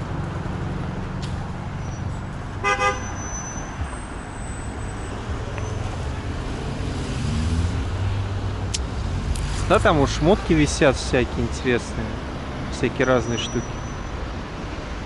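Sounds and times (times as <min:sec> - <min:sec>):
road traffic rumble: 0:00.0 - 0:15.0
short horn toots: 0:02.6 - 0:03.6.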